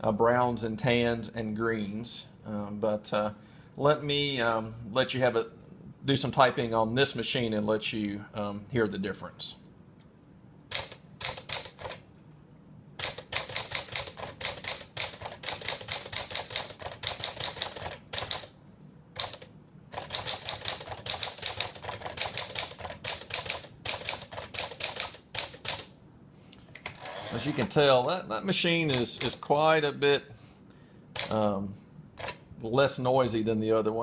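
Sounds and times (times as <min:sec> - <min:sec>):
typewriter keystroke clacks: 0:10.7 - 0:12.0, 0:13.0 - 0:18.5, 0:19.2 - 0:25.9, 0:28.9 - 0:29.5, 0:31.2 - 0:31.4
typewriter margin bell: 0:23.4 - 0:25.8.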